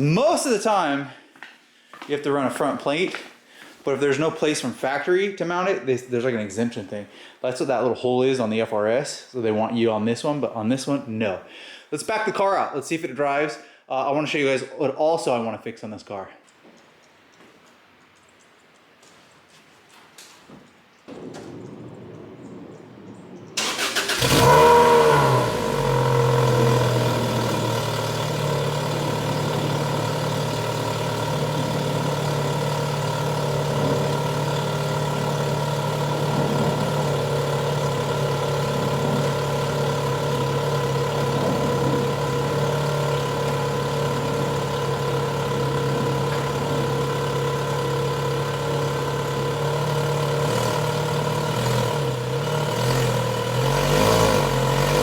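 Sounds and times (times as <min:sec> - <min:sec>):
car engine idling: 0:21.1 - 0:55.0.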